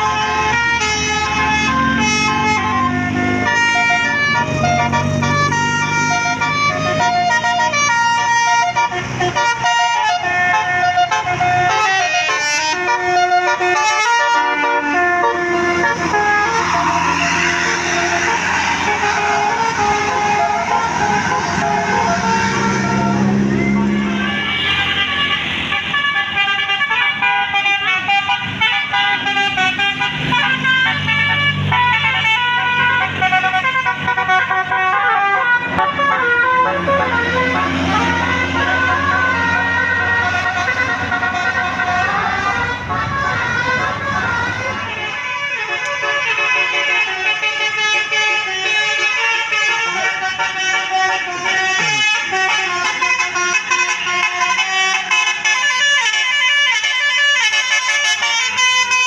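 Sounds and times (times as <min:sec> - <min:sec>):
bus horn playing a tune: 0:00.0 - 0:59.0
low engine hum: 0:15.0 - 0:25.8, 0:27.6 - 0:45.4.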